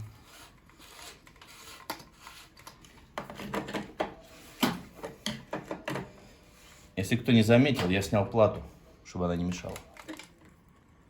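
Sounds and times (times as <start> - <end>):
plastic threads scraping and rubbing: 0.0 - 4.6.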